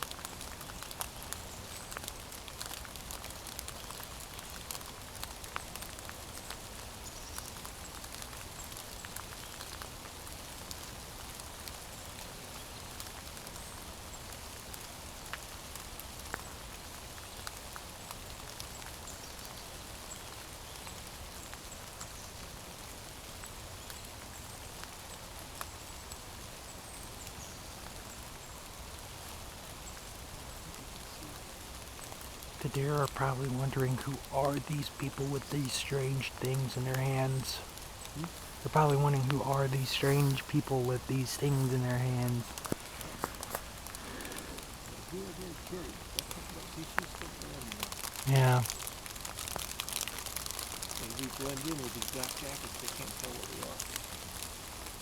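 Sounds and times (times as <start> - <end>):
light rain falling: 0.0 - 55.0
raindrops ticking sharply: 27.8 - 55.0.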